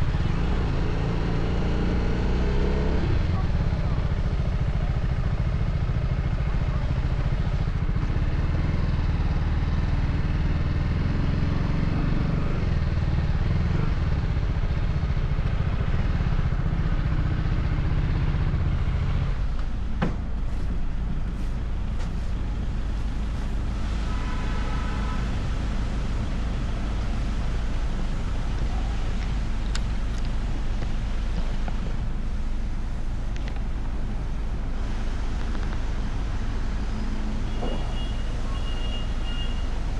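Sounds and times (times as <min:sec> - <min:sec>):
motorcycle engine running: 0:00.0 - 0:24.4.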